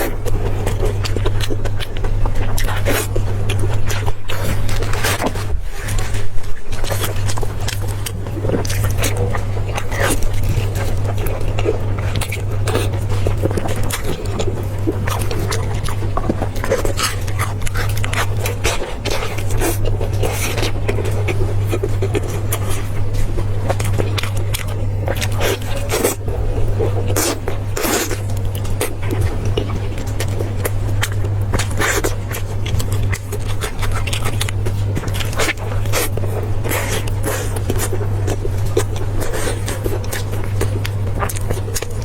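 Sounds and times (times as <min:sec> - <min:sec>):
chewing and wet mouth clicks: 0:00.0 - 0:42.0
steady low hum: 0:00.0 - 0:42.0.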